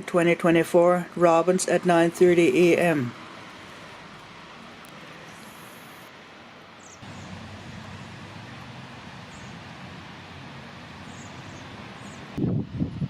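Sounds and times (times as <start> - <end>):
background hiss: 0.0 - 13.0
bird chirps: 6.8 - 8.2, 9.2 - 9.7, 11.0 - 12.3.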